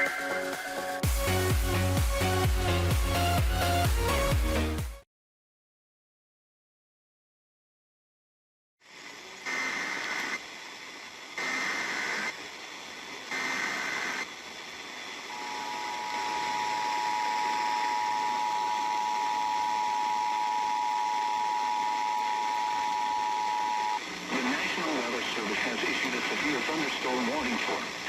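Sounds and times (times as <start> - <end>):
radio hiss: 8.9 - 28.0
warbling data bursts: 11.3 - 12.5, 13.3 - 14.4, 15.2 - 28.0
two-tone attention signal: 15.3 - 24.0.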